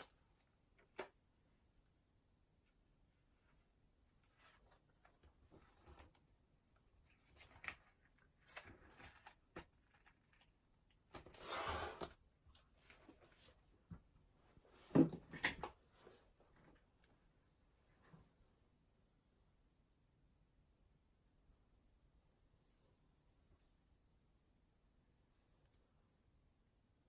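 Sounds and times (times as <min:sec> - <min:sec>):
soft rustling: 0:22.2 - 0:26.2.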